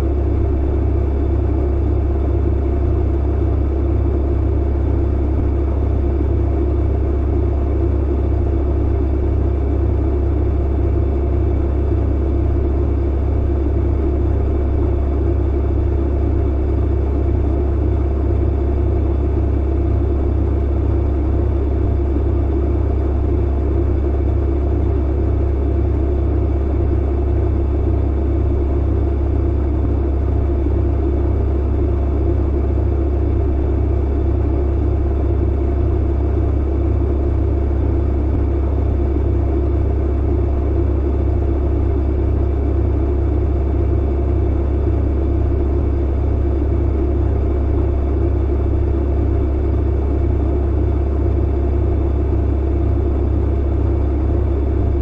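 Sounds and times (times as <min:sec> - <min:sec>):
clothes dryer humming: 0:54.2 - 0:55.0.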